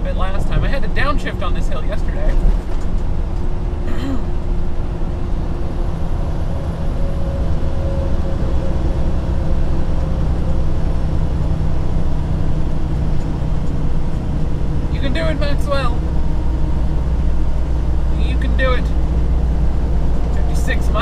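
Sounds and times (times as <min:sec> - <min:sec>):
truck diesel engine droning: 0:00.0 - 0:21.0.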